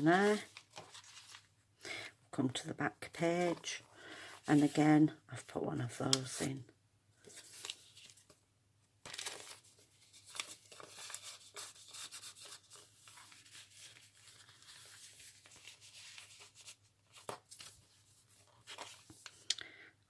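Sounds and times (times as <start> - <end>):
paper rustling and crackling: 0.0 - 1.5, 7.2 - 8.4, 9.0 - 19.5.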